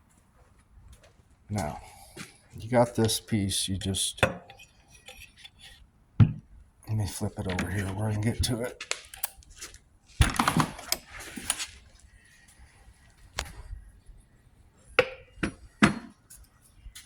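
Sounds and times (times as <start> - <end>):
metal clunks and knocks on workbench: 6.2 - 6.5, 15.0 - 16.2.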